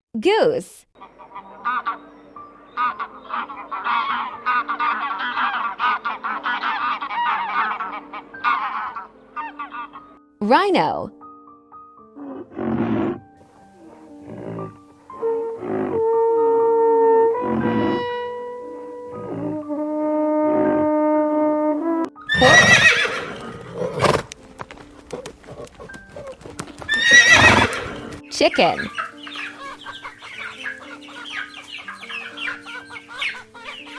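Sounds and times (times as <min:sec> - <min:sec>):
geese honking: 0:01.0 - 0:10.2, 0:17.3 - 0:19.8, 0:26.9 - 0:33.9
horse whinnying: 0:12.2 - 0:13.3, 0:14.1 - 0:16.1, 0:17.4 - 0:18.2, 0:19.1 - 0:19.6, 0:22.2 - 0:24.3, 0:26.9 - 0:29.0
held brass-like tones: 0:14.2 - 0:23.5.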